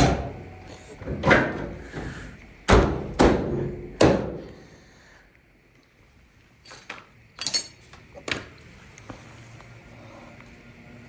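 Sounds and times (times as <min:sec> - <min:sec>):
metallic clinks and taps: 0:06.7 - 0:07.8.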